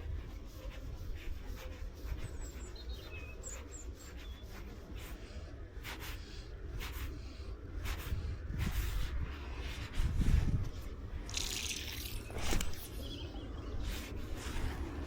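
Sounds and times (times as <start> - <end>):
faint bird chirps: 1.8 - 4.8, 11.3 - 14.9
steady low rumble: 4.6 - 15.0.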